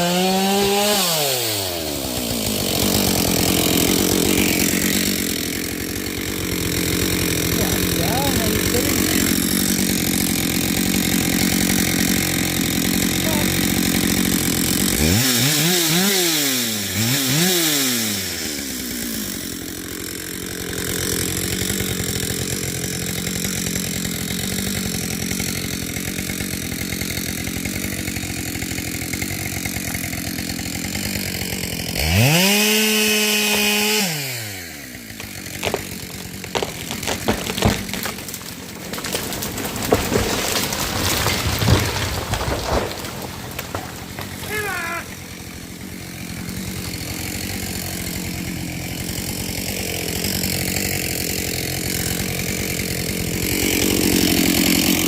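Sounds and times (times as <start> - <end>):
chainsaw engine revving: 0.0 - 55.0
sharp cracks: 35.1 - 45.2.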